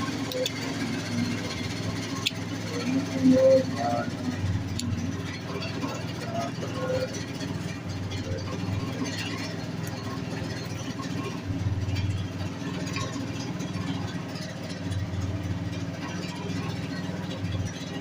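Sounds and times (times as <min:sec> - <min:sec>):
engine idling: 0:00.0 - 0:18.0
faint voices: 0:00.0 - 0:18.0.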